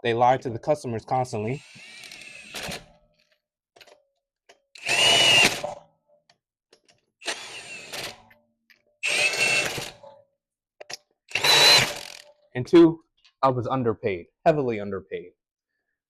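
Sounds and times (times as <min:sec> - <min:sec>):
impact wrench spinning: 0:01.6 - 0:02.8, 0:04.8 - 0:05.7, 0:07.2 - 0:08.2, 0:09.0 - 0:10.0, 0:11.3 - 0:12.3.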